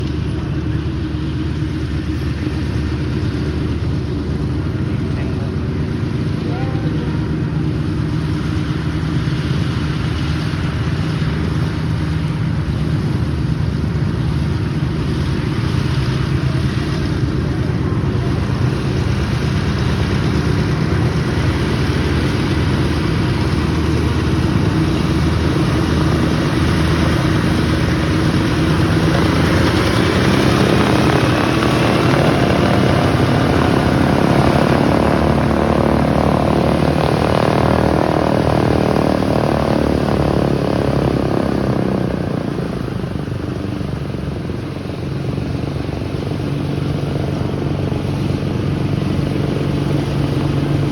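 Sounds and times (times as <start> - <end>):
aircraft radial engines droning: 0.0 - 50.9
faint rising whine: 23.7 - 44.6.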